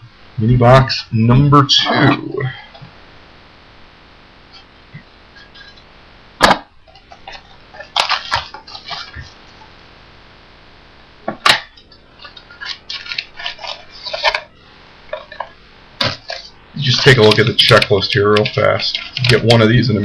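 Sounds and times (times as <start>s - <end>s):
sharp cardboard cracks: 6.4s - 6.7s, 11.4s - 11.8s
cardboard and wrappers rustling: 6.9s - 9.6s, 11.4s - 20.0s.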